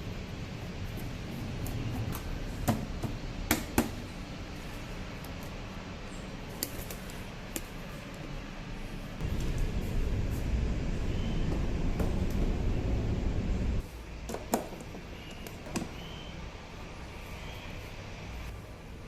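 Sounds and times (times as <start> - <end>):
low steady hum: 0.0 - 14.1
low rumble: 9.2 - 13.8.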